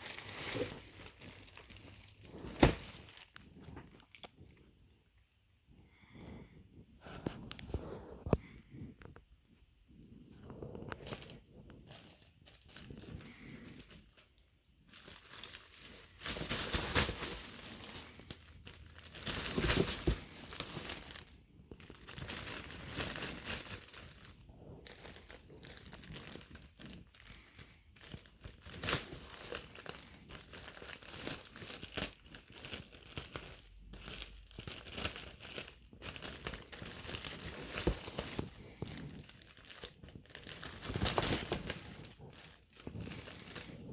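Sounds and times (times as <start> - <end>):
packaging crinkling and rustling: 0.0 - 4.7, 10.3 - 43.9
packaging tearing: 14.9 - 43.9.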